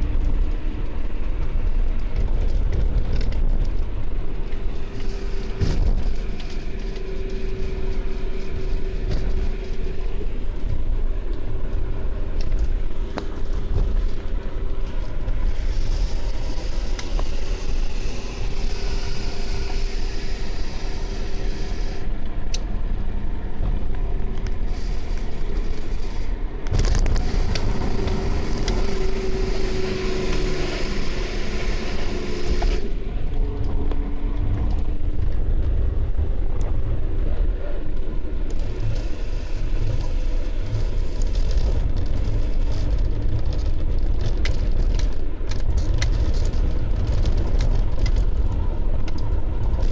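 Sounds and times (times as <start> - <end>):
car engine and road rumble: 0.0 - 49.9
faint driveline whine: 0.0 - 49.9.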